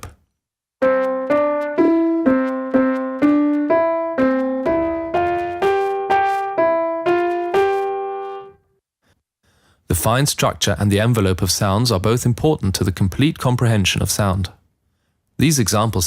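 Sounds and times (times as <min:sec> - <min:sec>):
piano-like keyboard melody: 0:00.8 - 0:08.6.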